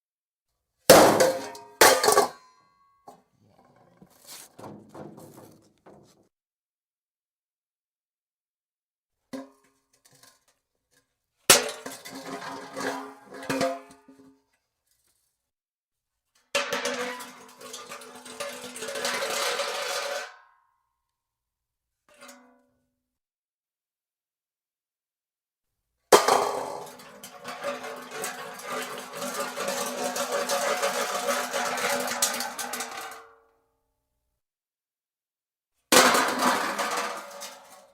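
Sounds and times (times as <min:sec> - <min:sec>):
hubcap clanging on concrete: 0:26.2 - 0:33.2.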